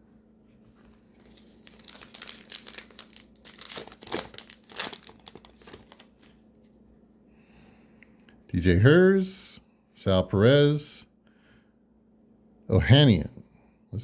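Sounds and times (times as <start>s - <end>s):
wrapper tearing and crinkling: 1.2s - 6.3s.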